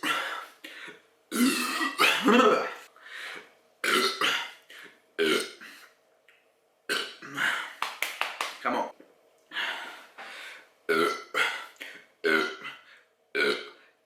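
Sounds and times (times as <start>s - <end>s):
man belching loudly: 1.3s - 2.5s, 10.9s - 11.4s, 12.2s - 12.7s, 13.4s - 13.8s.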